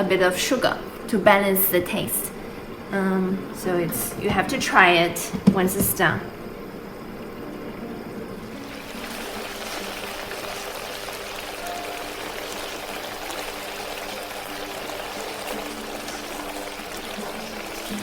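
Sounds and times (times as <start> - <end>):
sauce bubbling in a pan: 6.8 - 18.0.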